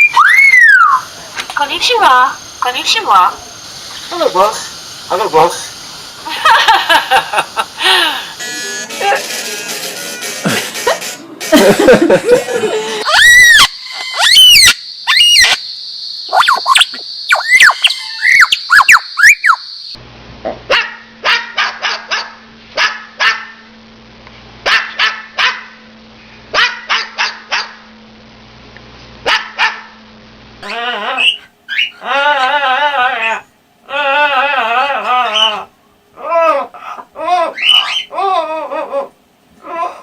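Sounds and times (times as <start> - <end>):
high parrot calls: 0.0 - 1.7, 13.0 - 15.6, 16.3 - 19.7, 30.6 - 35.7, 36.4 - 38.5
parrot imitating dog barks: 20.7 - 23.6, 24.7 - 25.7, 26.6 - 27.8, 29.2 - 29.9, 34.0 - 35.7, 36.3 - 38.2.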